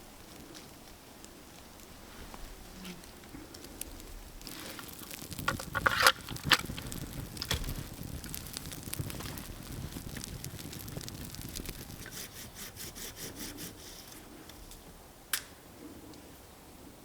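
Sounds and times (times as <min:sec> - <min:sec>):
irregular crackling: 0:00.2 - 0:14.6
hand rasping wood: 0:12.0 - 0:14.0.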